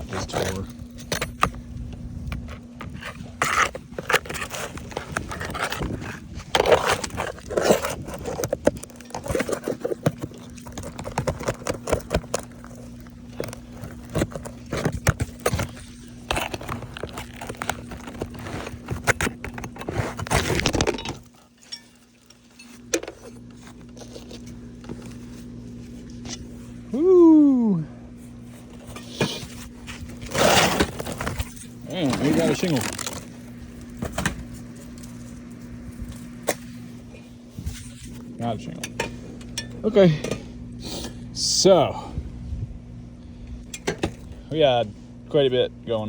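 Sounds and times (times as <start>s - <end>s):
scraping and crackling: 0.0s - 26.8s, 28.4s - 40.4s
roof shingle being torn loose: 2.4s - 21.6s, 29.0s - 35.0s.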